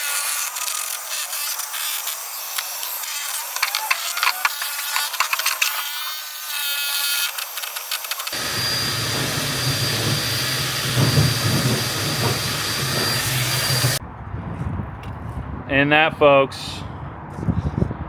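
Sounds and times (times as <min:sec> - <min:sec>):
machine motor droning: 0:08.1 - 0:14.0.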